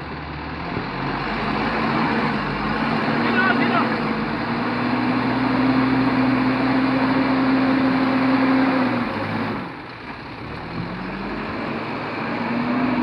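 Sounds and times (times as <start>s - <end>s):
diesel engine revving: 0.0s - 13.0s.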